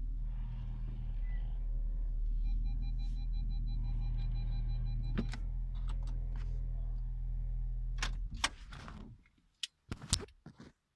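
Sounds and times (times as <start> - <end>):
low machine hum: 0.0 - 8.4.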